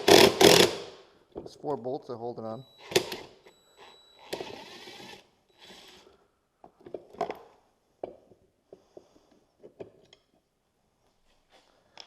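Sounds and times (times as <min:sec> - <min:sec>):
impact driver running: 0:00.0 - 0:00.8.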